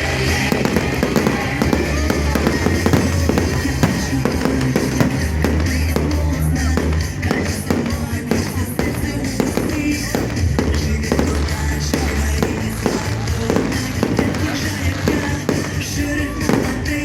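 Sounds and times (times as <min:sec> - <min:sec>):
fireworks bangs and crackles: 0:00.0 - 0:17.0
loud music with heavy bass: 0:00.0 - 0:17.0.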